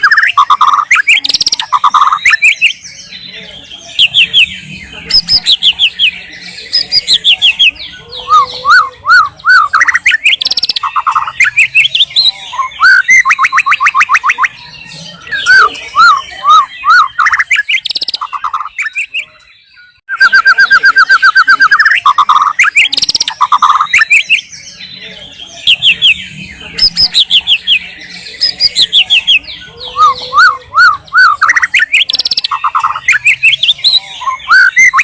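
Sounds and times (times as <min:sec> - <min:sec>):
bird singing whistled song: 0:00.0 - 0:35.0.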